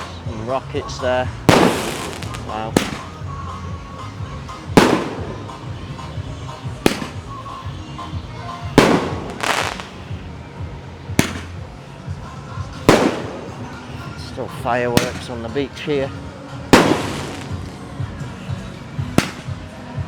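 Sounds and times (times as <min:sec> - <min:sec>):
background music: 0:00.0 - 0:20.0
fireworks banging: 0:01.4 - 0:03.3, 0:04.7 - 0:06.1, 0:06.7 - 0:07.4, 0:08.8 - 0:10.0, 0:11.2 - 0:11.7, 0:12.8 - 0:13.8, 0:15.0 - 0:15.4, 0:16.7 - 0:17.9, 0:19.1 - 0:19.7.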